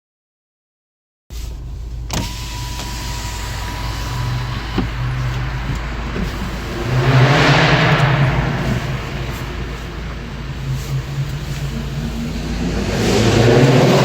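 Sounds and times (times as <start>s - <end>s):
car engine running: 1.3s - 14.0s
rush of noise: 3.2s - 14.0s.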